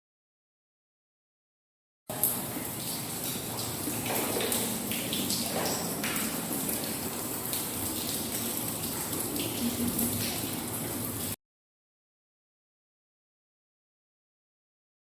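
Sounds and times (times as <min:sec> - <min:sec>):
heavy rain: 0:02.1 - 0:11.4.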